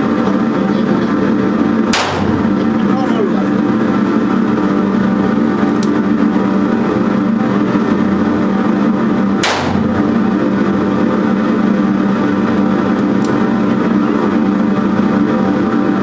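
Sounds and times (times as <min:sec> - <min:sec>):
loud droning hum: 0:00.0 - 0:16.0
revolver shot: 0:01.9 - 0:02.6, 0:09.4 - 0:10.0.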